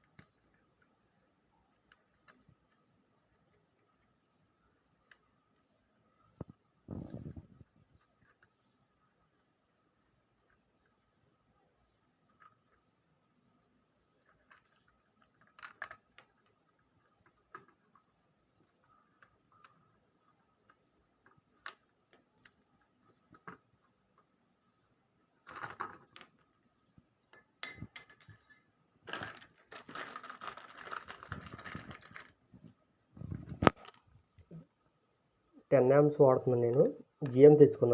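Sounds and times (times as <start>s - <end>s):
rustling: 29.0s - 34.7s.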